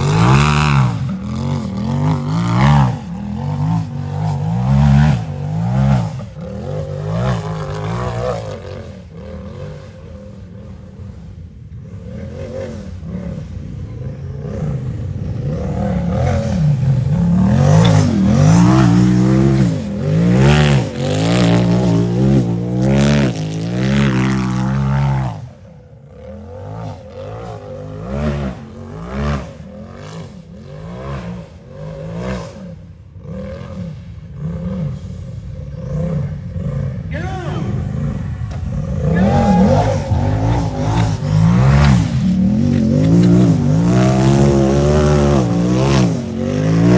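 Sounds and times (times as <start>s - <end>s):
race vehicle engine revving: 0.0s - 46.9s.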